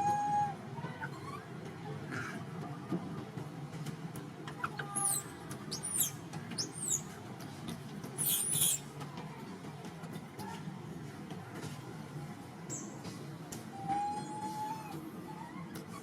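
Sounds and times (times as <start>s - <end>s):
baby monkey shrieking: 5.0s - 6.1s, 6.7s - 7.0s, 8.2s - 8.8s.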